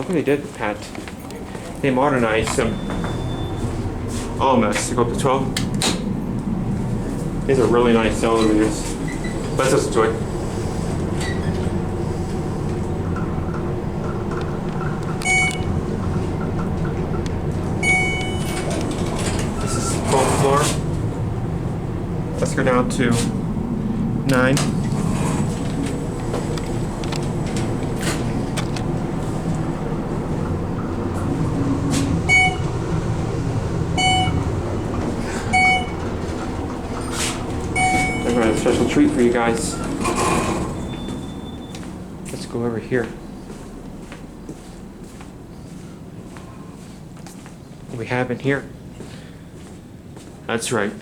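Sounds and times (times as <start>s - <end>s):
elevator travel rumble and hum: 0.0s - 51.0s
electronic chime tones: 15.2s - 15.7s, 17.8s - 18.8s, 32.3s - 32.7s, 34.0s - 34.4s, 37.8s - 38.6s.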